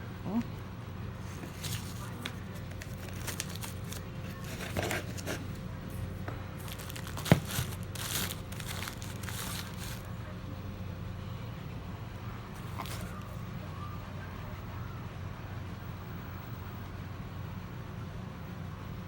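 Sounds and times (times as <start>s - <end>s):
low steady hum: 0.0s - 19.0s
box packaging crinkling: 1.2s - 5.6s, 6.6s - 10.1s, 12.6s - 13.3s.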